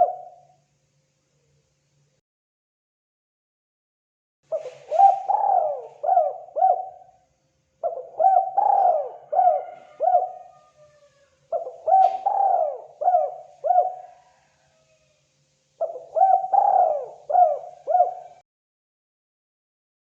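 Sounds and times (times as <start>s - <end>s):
dove cooing: 0.0s - 0.5s, 4.5s - 7.2s, 7.8s - 15.0s, 15.8s - 18.4s.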